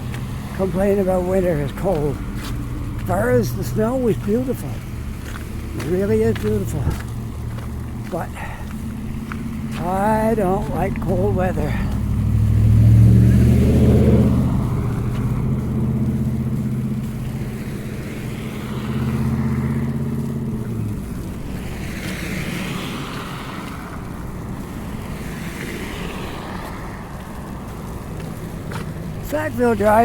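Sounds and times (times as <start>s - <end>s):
passing vehicle: 0.0s - 30.0s
vehicle engine running close by: 0.0s - 30.0s.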